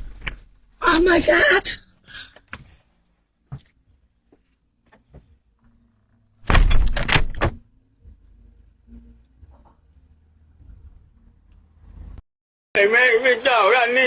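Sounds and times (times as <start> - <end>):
bangs and rattles at a door: 6.4 - 7.6.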